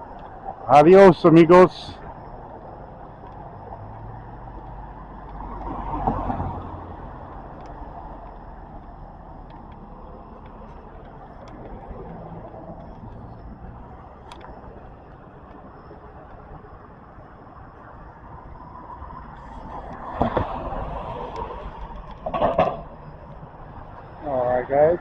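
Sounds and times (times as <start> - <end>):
street traffic noise: 0.0 - 25.0
vehicle passing by: 3.5 - 14.1, 18.7 - 25.0.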